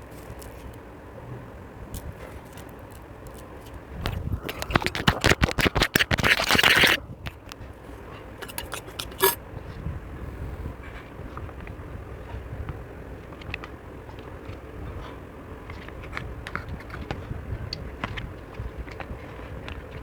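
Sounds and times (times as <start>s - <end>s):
slime crackling and popping: 2.0s - 7.0s.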